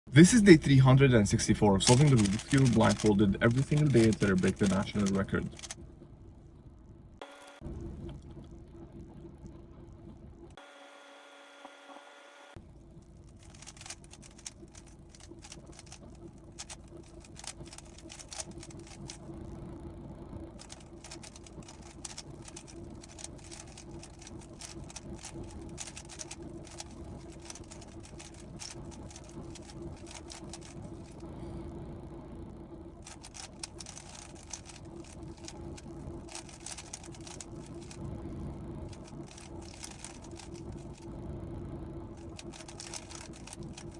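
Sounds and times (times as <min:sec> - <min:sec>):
steady low hum: 0:00.1 - 0:43.9
plastic puzzle cube clicking: 0:16.6 - 0:19.2, 0:20.6 - 0:30.8, 0:33.1 - 0:35.6, 0:42.3 - 0:43.9.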